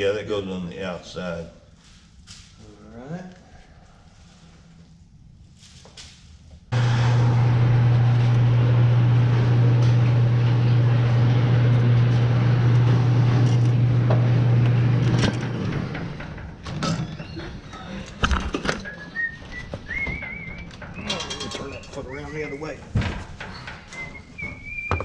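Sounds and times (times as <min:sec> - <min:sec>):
motor-driven machine humming: 0:06.7 - 0:16.6.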